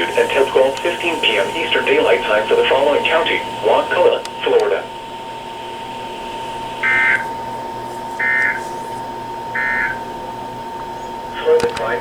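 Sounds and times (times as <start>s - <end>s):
radio hiss: 0.0s - 12.0s
data tone bursts: 4.8s - 10.2s.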